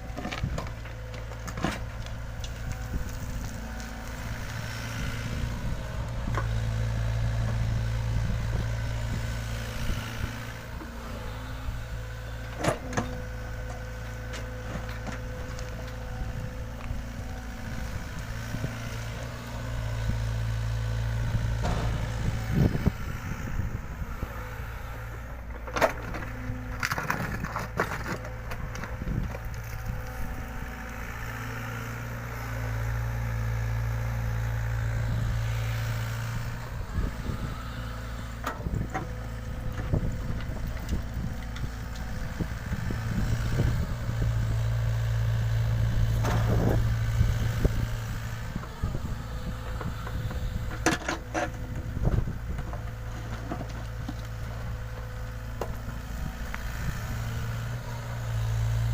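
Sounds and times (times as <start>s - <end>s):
excavator diesel engine running: 0.0s - 58.9s.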